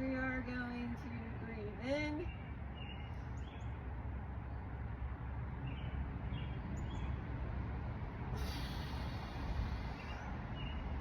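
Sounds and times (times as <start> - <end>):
steady low rumble: 0.0 - 11.0
hiss: 8.4 - 10.3.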